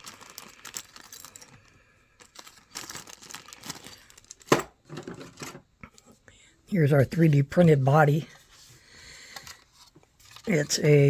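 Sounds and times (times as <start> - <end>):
plastic crinkling and rustling: 0.0 - 5.6, 9.3 - 11.0.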